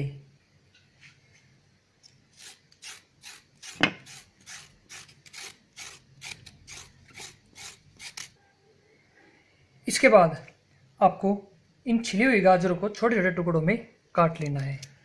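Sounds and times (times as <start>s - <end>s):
carrot peeling scrapes: 2.3s - 8.4s.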